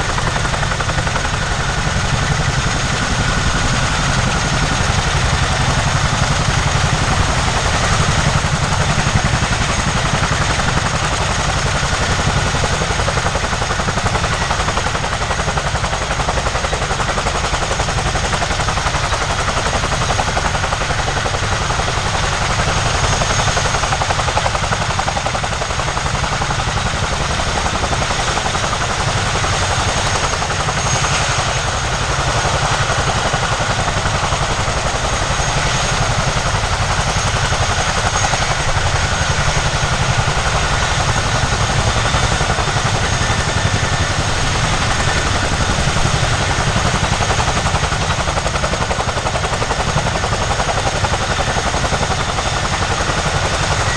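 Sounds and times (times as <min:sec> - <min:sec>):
helicopter rotors chopping: 0:00.0 - 0:53.9.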